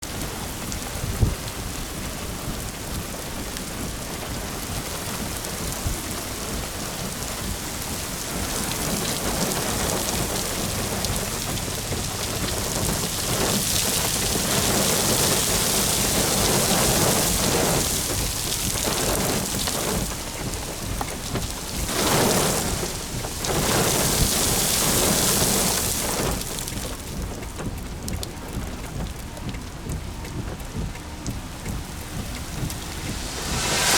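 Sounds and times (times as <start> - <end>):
rain: 0.0 - 33.9
wind gusts: 31.3 - 33.9.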